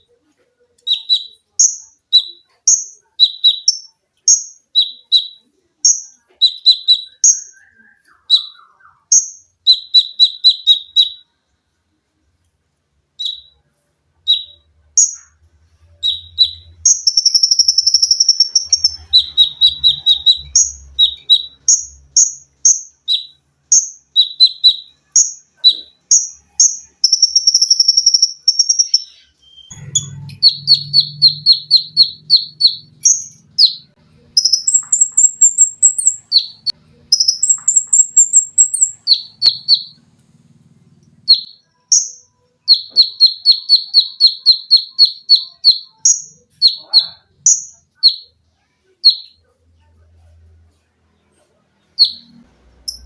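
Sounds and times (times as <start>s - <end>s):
songbird singing high notes: 16.0s - 40.0s.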